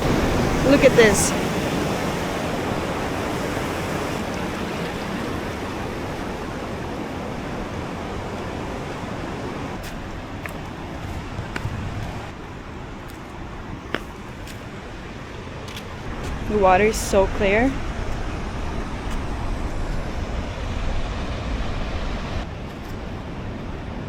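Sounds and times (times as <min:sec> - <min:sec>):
waterfall rushing water: 0:00.0 - 0:11.0, 0:15.1 - 0:22.5.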